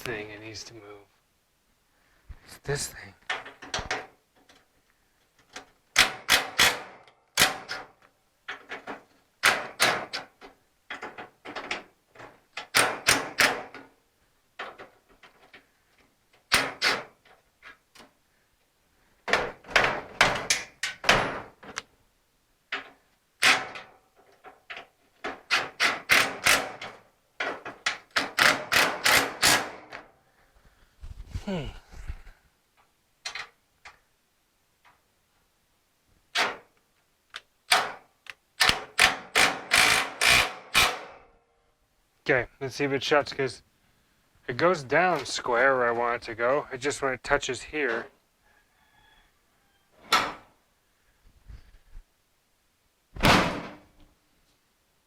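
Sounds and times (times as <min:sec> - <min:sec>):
hand tools clicking on metal: 0:37.3 - 0:41.0.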